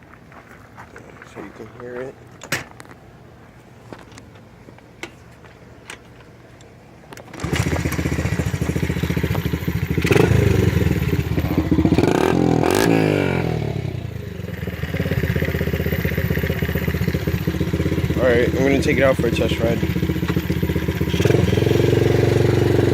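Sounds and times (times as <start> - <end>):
pit bike engine revving: 7.3 - 22.9.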